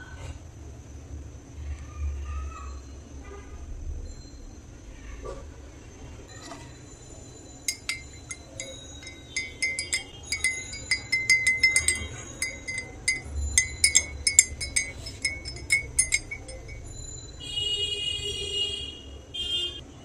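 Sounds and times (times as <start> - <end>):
spoon clinking in a cup: 7.6 - 17.0.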